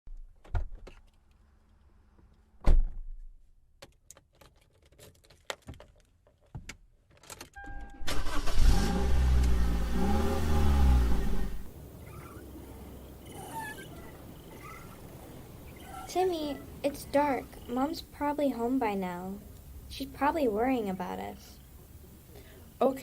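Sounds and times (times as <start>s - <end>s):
thump: 2.6s - 3.2s
short beep: 7.6s - 9.2s
car engine starting and running: 7.6s - 18.2s.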